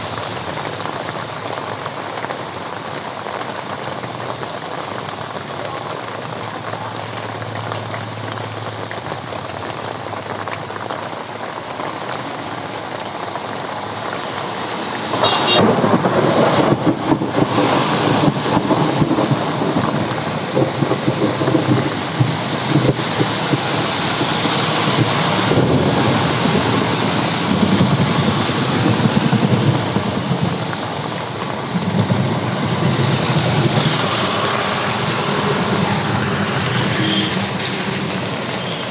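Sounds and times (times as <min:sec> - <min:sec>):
steady rain: 0:00.0 - 0:38.9
thunder crack and rumbling: 0:15.1 - 0:38.5.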